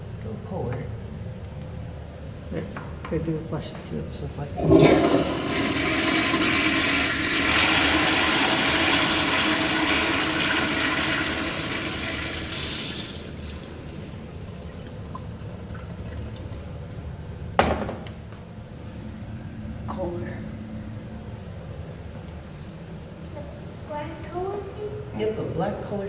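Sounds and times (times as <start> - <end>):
toilet flushing: 4.5 - 17.0.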